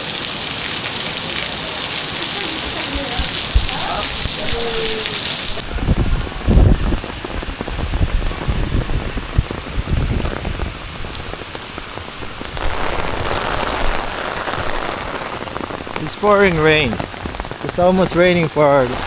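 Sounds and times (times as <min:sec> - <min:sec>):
heavy rain pouring: 0:00.0 - 0:19.0
low rumbles: 0:03.2 - 0:18.2.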